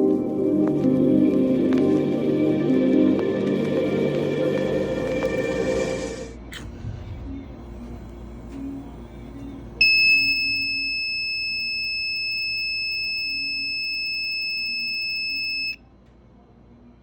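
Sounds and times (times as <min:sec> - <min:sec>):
high-pitched alarm buzzer tone: 0:09.8 - 0:15.8.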